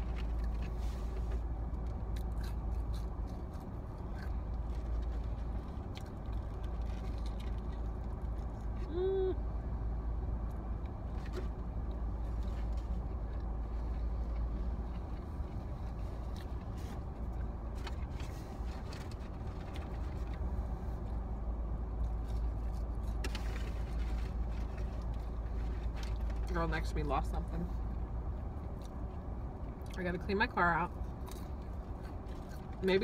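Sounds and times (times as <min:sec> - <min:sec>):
faint clicks and rustles: 0:00.0 - 0:08.9, 0:10.5 - 0:21.3, 0:21.9 - 0:26.7
car rumble: 0:00.0 - 0:33.0.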